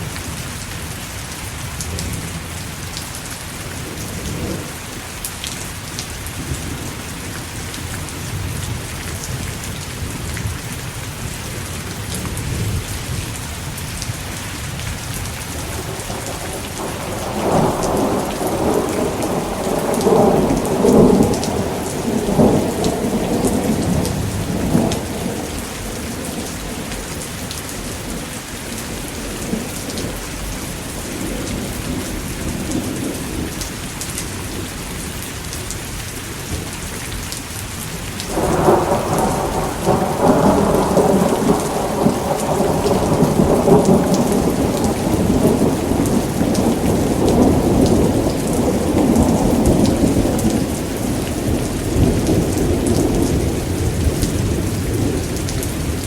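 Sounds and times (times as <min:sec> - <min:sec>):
rain pouring: 0:00.0 - 0:56.0
thunder rumbling: 0:15.1 - 0:33.6, 0:38.2 - 0:56.0.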